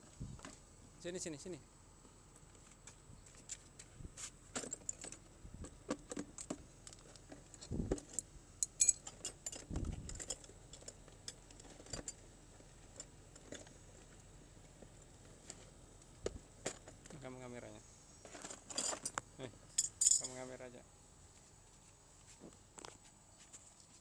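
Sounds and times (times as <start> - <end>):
metal tools clinking and rattling: 4.6 - 5.3, 8.0 - 12.3, 18.4 - 20.4.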